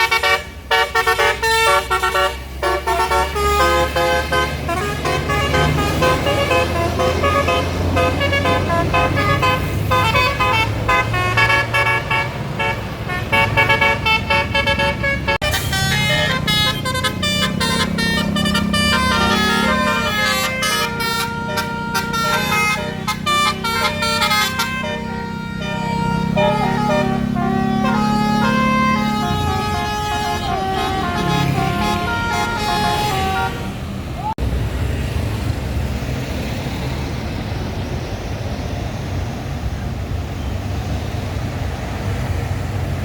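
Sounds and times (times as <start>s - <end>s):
musical air horns playing melody: 0.0s - 33.8s
bus engine running: 0.0s - 43.0s.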